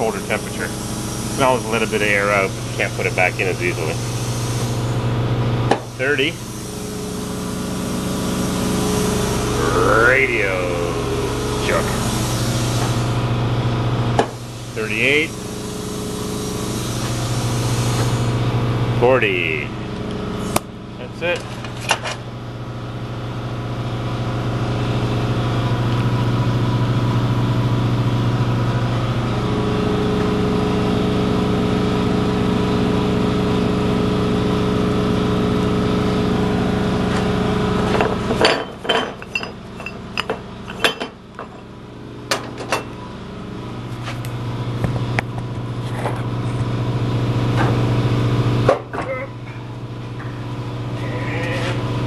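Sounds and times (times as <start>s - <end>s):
air compressor humming: 0.0s - 52.0s
metal clinks and knocks: 37.9s - 41.7s.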